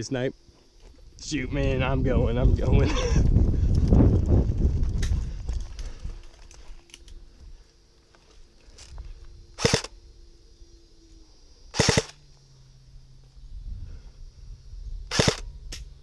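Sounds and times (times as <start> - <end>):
airsoft gun bursts: 9.6 - 9.9, 11.7 - 12.2, 15.1 - 15.5.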